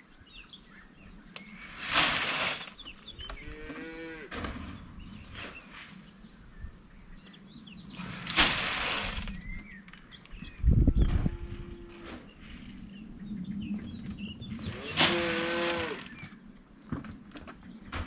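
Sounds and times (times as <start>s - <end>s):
small birds chirping: 0.0s - 18.0s
loud hiss bursts: 1.7s - 2.8s, 8.0s - 9.4s, 14.8s - 16.1s
cow mooing: 3.4s - 4.3s, 14.8s - 16.2s.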